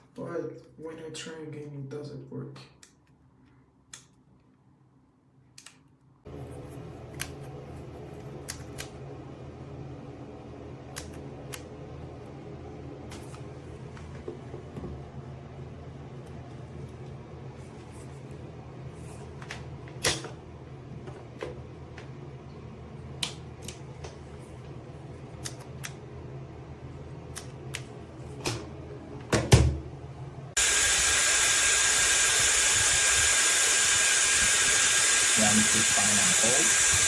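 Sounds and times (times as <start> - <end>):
hair dryer blowing with whine: 30.6 - 37.0.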